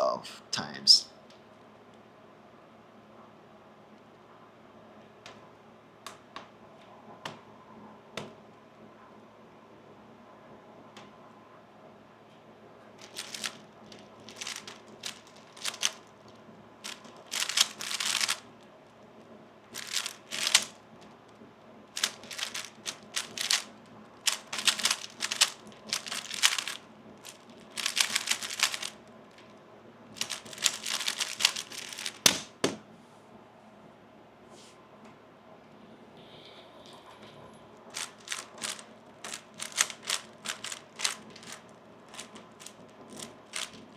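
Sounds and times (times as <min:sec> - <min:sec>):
puzzle cube clicking: 0:13.0 - 0:13.6, 0:14.3 - 0:16.1, 0:16.9 - 0:18.4, 0:19.8 - 0:20.8, 0:22.0 - 0:29.0, 0:30.2 - 0:32.8, 0:38.0 - 0:43.9.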